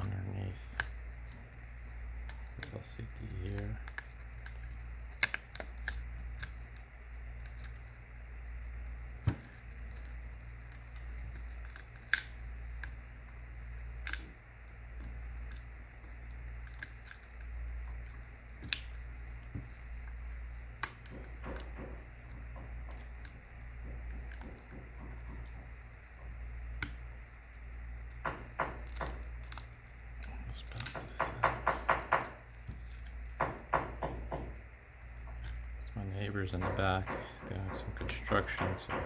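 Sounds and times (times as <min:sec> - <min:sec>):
steady low hum: 0:00.0 - 0:39.0
prying tool clicking and tapping: 0:30.8 - 0:32.4, 0:33.4 - 0:34.6, 0:36.5 - 0:39.0.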